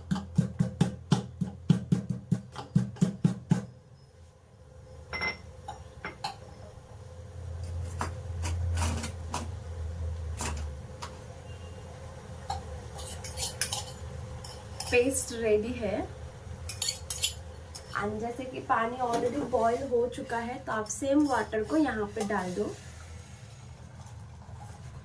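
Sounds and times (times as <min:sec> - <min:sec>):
spices pounded by hand: 0:00.0 - 0:03.7.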